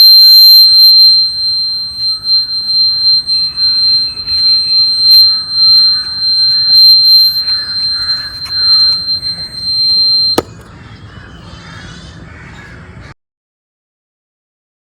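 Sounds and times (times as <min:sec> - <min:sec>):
buzzer click: 0:00.0 - 0:10.6
electronic buzzer tone: 0:00.0 - 0:10.6.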